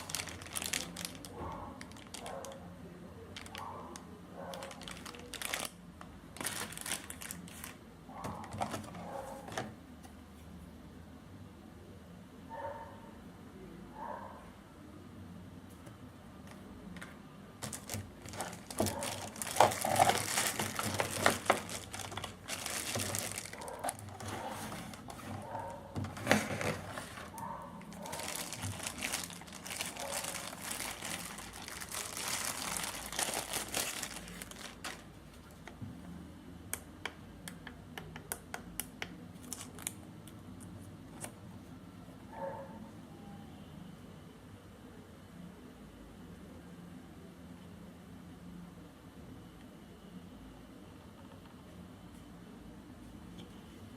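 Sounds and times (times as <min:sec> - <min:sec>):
plastic packaging crinkling: 0:00.0 - 0:02.6, 0:03.3 - 0:07.8, 0:17.6 - 0:35.6, 0:39.4 - 0:40.1.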